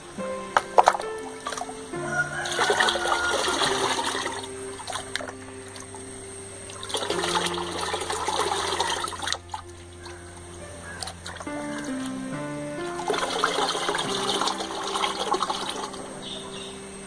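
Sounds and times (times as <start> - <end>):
background music with held notes: 0.0 - 17.0
clay slurry sloshing through sieve: 6.7 - 10.2.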